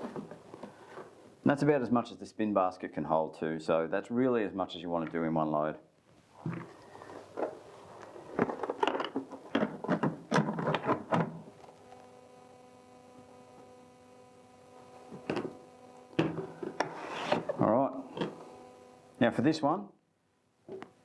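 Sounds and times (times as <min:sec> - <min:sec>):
faint steady hum: 0:00.0 - 0:21.0
plastic clunks and rattles: 0:08.4 - 0:11.4.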